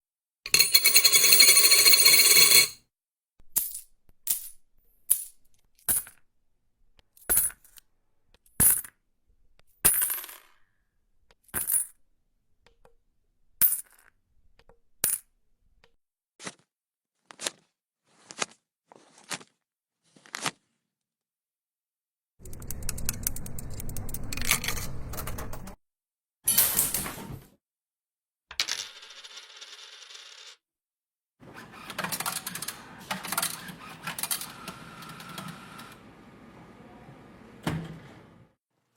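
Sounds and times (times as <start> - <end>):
coins clinking: 0.5 - 2.8, 28.6 - 30.6
coins rattling clatter: 0.5 - 2.8, 28.6 - 30.6.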